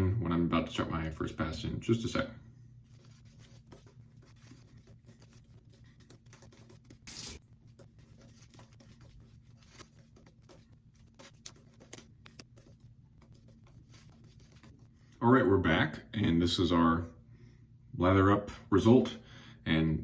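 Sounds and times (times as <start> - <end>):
shaving brush wet scratching: 2.8 - 15.2.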